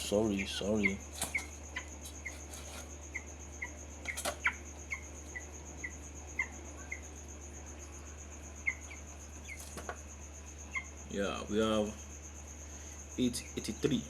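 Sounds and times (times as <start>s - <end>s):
chicks peeping: 0.0s - 11.1s.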